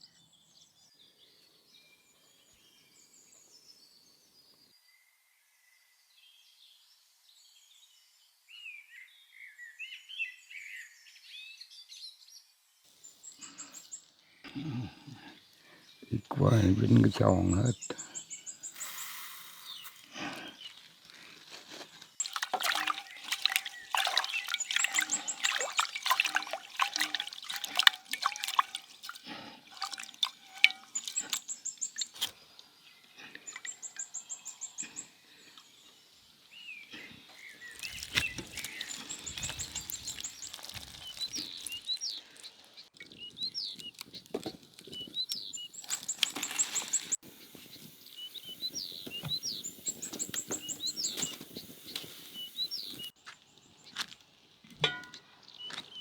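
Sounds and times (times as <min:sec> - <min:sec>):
bird chirps: 0:13.1 - 0:20.9, 0:22.2 - 0:53.2
splashing clicking knocks: 0:22.2 - 0:32.3.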